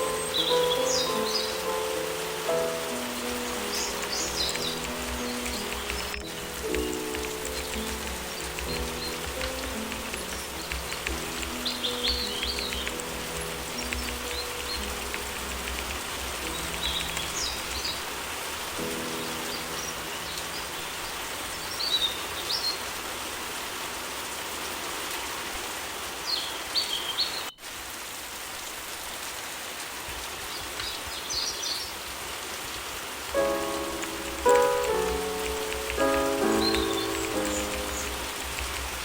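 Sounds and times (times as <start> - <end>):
faint held piano notes: 0.0 - 21.7, 33.3 - 39.0
steady rain: 0.0 - 39.0.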